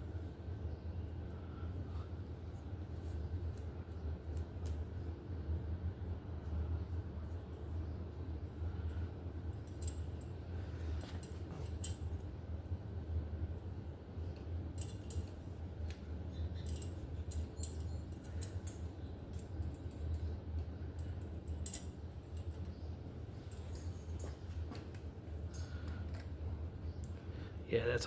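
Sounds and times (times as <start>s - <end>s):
steady low hum: 0.0s - 28.0s
small metal parts clicking: 8.8s - 10.4s, 11.0s - 12.3s, 14.3s - 22.8s.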